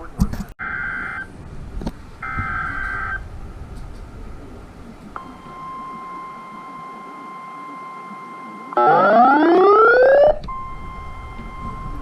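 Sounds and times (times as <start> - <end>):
steady weather alert tone: 4.6 - 12.0
warbling digital data tones: 5.3 - 10.4.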